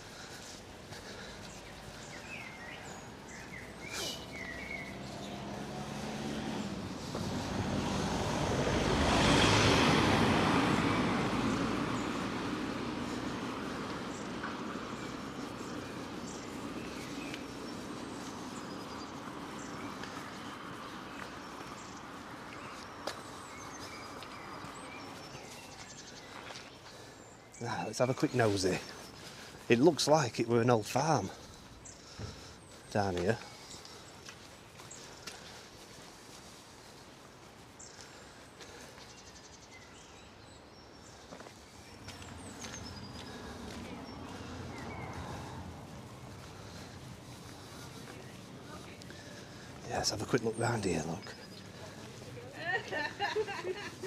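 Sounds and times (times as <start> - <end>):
broad rushing noise: 0.0 - 26.4
small birds chirping: 0.0 - 54.0.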